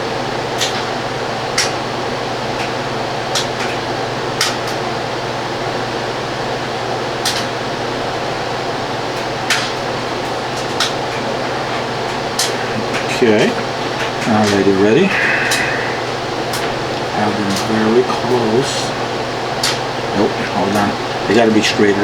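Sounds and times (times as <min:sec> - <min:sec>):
fan whirring hum: 0:00.0 - 0:22.0
small sharp clicks: 0:07.2 - 0:07.5.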